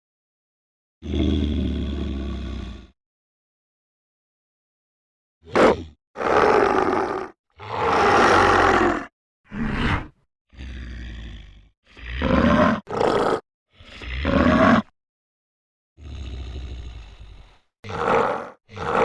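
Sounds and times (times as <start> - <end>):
monstrous growls and roars: 1.0 - 3.0, 5.4 - 14.9, 16.0 - 19.0.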